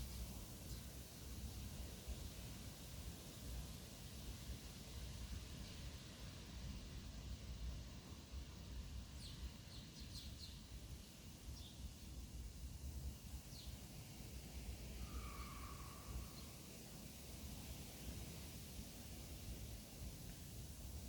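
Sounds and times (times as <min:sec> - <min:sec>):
faint bird chirps: 0:15.0 - 0:16.6.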